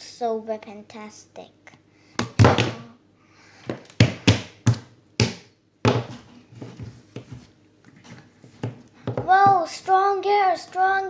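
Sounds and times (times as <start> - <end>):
toy figures knocking on hard surface: 2.2 - 2.9, 3.7 - 6.2, 8.6 - 9.7.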